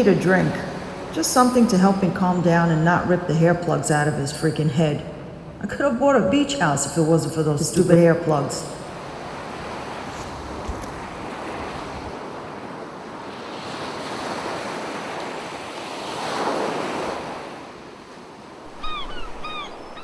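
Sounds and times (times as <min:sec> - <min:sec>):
ocean surf on beach: 0:00.0 - 0:20.0
wind on microphone: 0:09.0 - 0:14.0
bird calling: 0:18.7 - 0:20.0.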